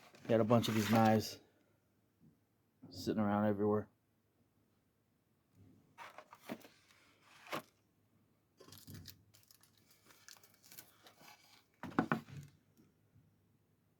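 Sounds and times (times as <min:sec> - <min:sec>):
packaging rustling and crinkling: 0:00.0 - 0:01.2, 0:06.0 - 0:07.7, 0:08.6 - 0:12.5.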